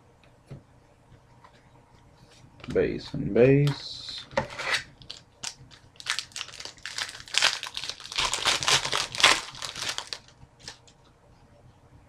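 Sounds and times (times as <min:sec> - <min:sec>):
packaging crinkling: 0:04.7 - 0:10.9.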